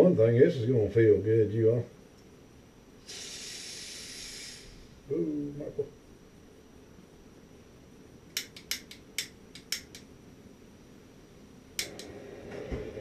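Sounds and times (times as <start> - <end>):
sharp clicks: 8.3 - 10.1, 11.8 - 12.1.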